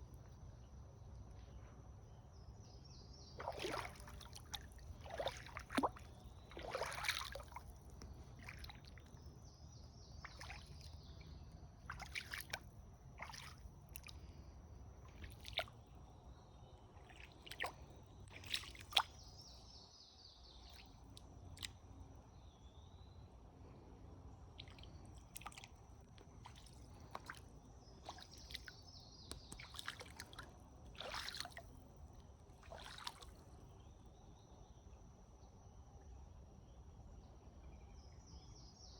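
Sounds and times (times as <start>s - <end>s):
faint low outdoor rumble: 0.0s - 38.8s
water dripping: 3.4s - 9.3s, 10.2s - 11.0s, 11.9s - 14.3s, 15.0s - 15.8s, 17.0s - 19.3s, 24.6s - 25.8s, 28.0s - 31.7s, 32.6s - 33.3s.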